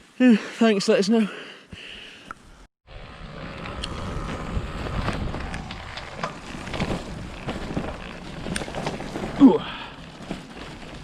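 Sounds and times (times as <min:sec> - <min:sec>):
wind rumbling on microphone: 0:02.9 - 0:11.0.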